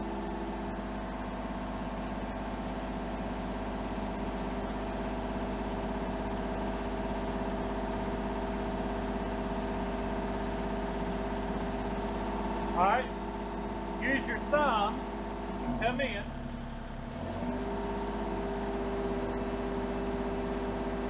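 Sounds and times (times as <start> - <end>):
excavator diesel engine running: 0.0 - 21.0.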